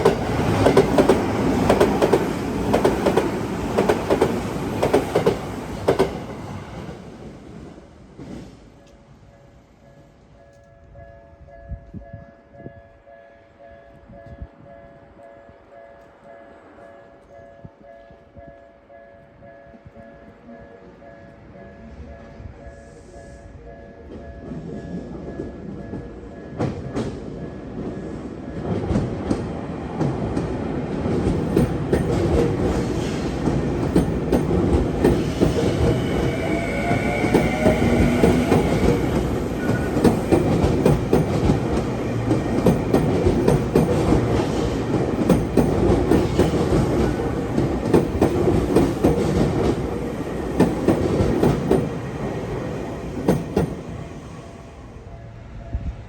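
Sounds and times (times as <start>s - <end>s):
train wheels clattering over rail joints: 28.6s - 53.9s
train motor whine: 35.0s - 43.0s.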